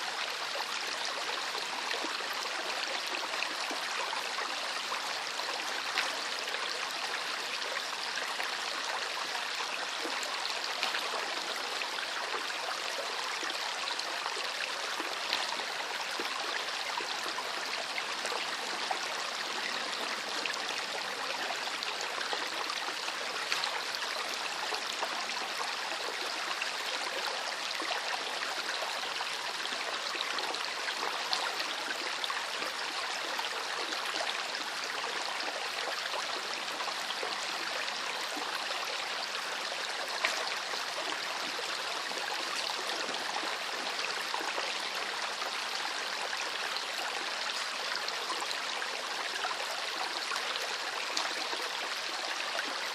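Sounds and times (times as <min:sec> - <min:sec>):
river water over stones: 0:00.0 - 0:52.9.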